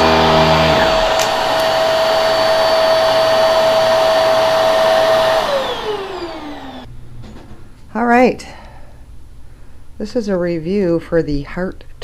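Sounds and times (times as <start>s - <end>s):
vacuum cleaner running: 0.0s - 6.9s
vacuum motor winding down: 0.0s - 6.9s.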